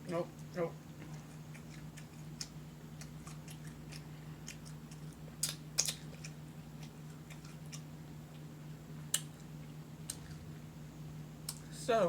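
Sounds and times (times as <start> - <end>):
steady low hum: 0.0 - 12.0
close-up chewing: 0.3 - 10.7
lip smacks: 1.0 - 8.5, 9.1 - 10.4.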